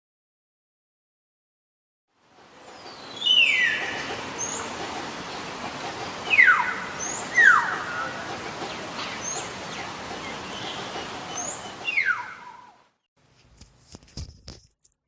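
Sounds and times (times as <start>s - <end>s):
steady hiss: 2.2s - 12.0s
bird whistles sliding downward: 3.0s - 4.6s, 11.3s - 12.7s.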